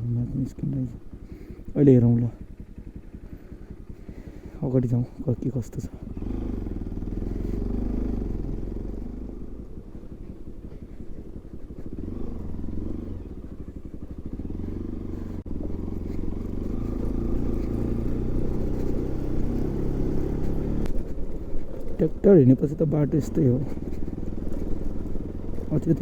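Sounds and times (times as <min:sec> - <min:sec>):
motorcycle engine chugging: 0:00.0 - 0:26.0.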